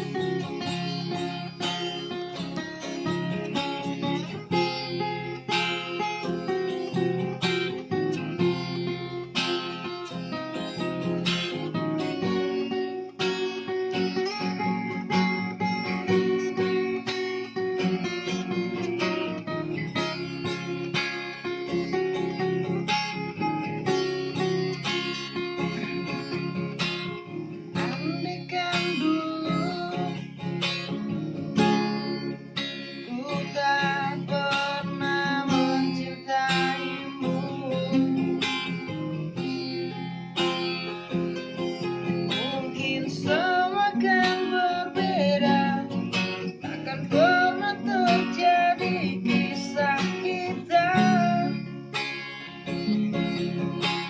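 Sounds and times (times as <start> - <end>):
acoustic guitar strumming: 0.0 - 54.0
person singing: 27.7 - 40.2, 42.0 - 52.0.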